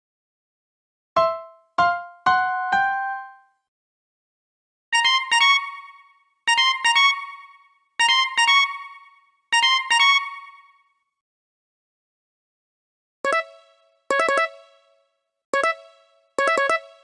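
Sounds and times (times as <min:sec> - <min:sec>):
mobile phone ringtone: 0:01.2 - 0:03.5, 0:15.6 - 0:17.0.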